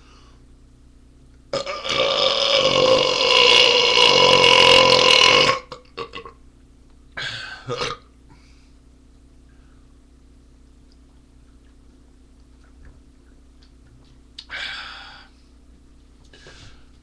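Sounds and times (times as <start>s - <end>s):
man burping loudly: 1.6s - 6.3s, 7.6s - 8.0s.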